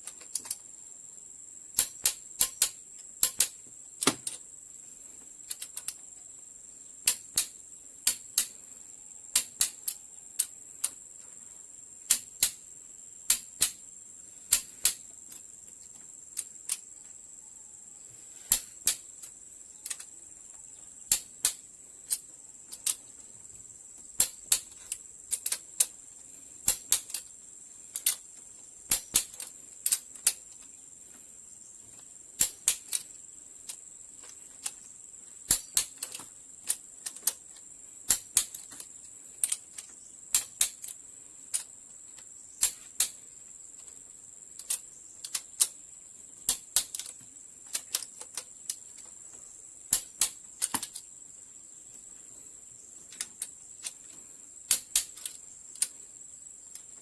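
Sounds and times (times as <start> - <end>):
sharp clicks and taps: 1.8 - 4.4, 7.0 - 8.5, 9.3 - 11.0, 13.3 - 13.8, 18.4 - 20.1, 21.1 - 23.1, 24.2 - 25.9, 26.6 - 27.3, 28.9 - 30.7, 31.9 - 33.1, 35.5 - 37.4, 44.6 - 45.8, 46.5 - 49.1, 49.9 - 51.1, 53.1 - 56.0.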